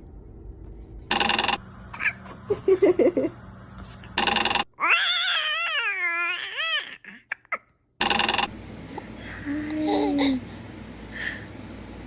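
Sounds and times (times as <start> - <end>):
baby cooing: 4.8 - 7.7, 9.3 - 10.5
baby crying: 4.8 - 7.7.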